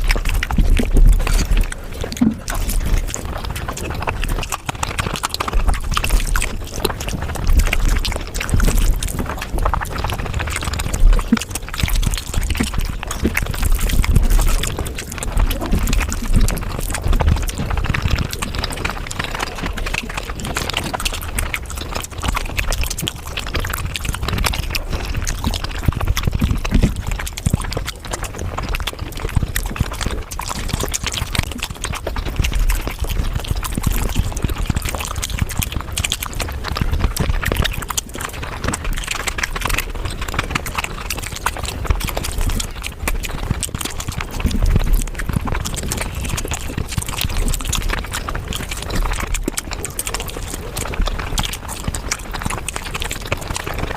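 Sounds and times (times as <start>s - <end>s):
sped-up chewing mouth clicks: 0.0s - 53.9s.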